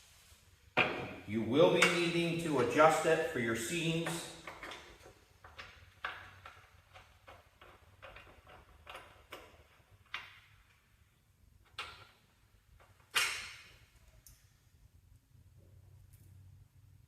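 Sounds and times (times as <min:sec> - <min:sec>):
light clicks and taps of parts: 0:11.6 - 0:14.5.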